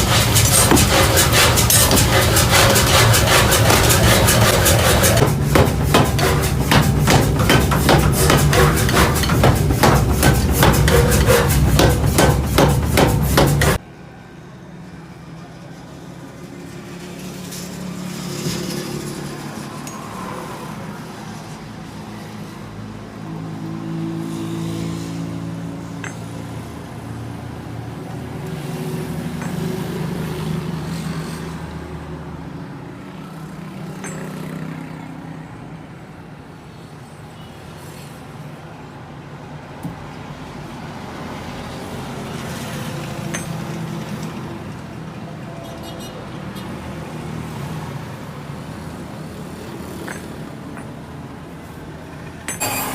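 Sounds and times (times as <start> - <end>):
rapid metal hammering: 0.0 - 13.8
engine hum of passing vehicles: 0.0 - 52.6.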